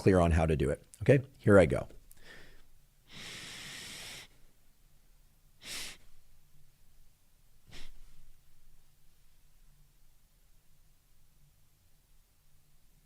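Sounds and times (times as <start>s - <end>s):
person inhaling through nose: 2.2s - 4.5s, 5.6s - 6.2s, 7.7s - 8.2s.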